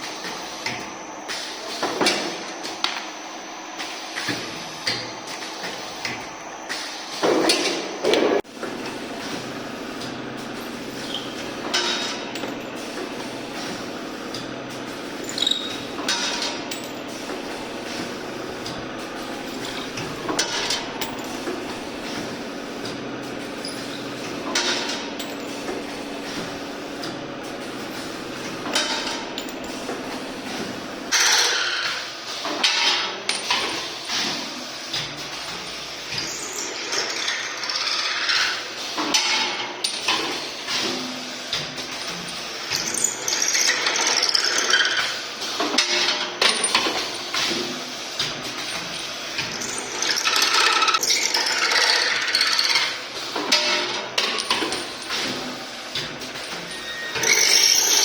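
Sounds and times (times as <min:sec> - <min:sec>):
machine motor hum: 0:08.5 - 0:31.2.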